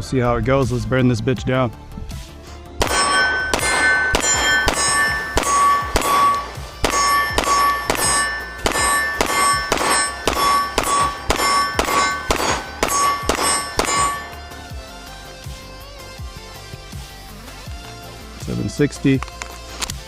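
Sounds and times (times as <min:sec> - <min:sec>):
pistol shots: 0:02.8 - 0:14.6
bullets ringing on steel target: 0:02.8 - 0:14.8.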